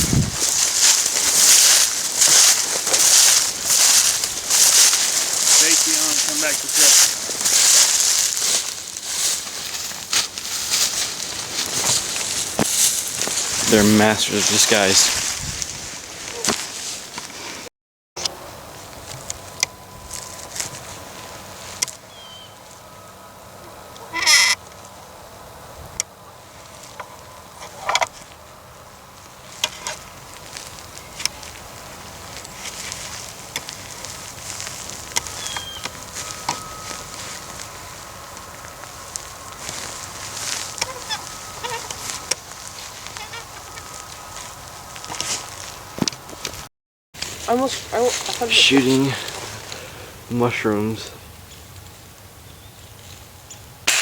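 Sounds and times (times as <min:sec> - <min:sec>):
bird calling: 0:00.0 - 0:15.2, 0:19.2 - 0:24.6, 0:26.8 - 0:45.0
dry leaves crunching underfoot: 0:00.0 - 0:17.7, 0:18.3 - 0:22.9, 0:26.3 - 0:50.1, 0:51.7 - 0:54.0
bleat-like animal call: 0:24.0 - 0:24.6, 0:40.8 - 0:42.0, 0:43.1 - 0:43.6.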